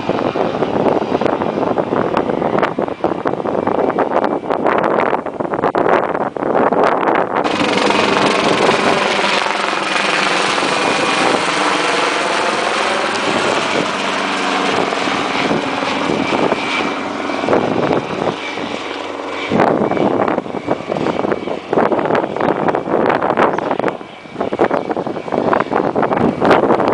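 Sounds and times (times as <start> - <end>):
helicopter rotor and engine: 0.0 - 26.9.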